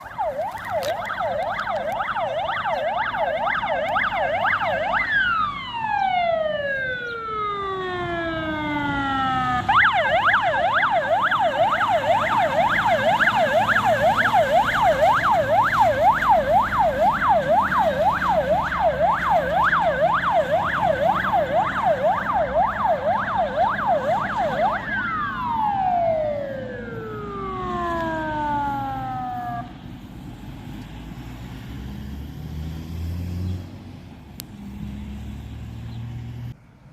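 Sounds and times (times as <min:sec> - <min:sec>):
fire truck yelp siren: 0:00.0 - 0:29.8.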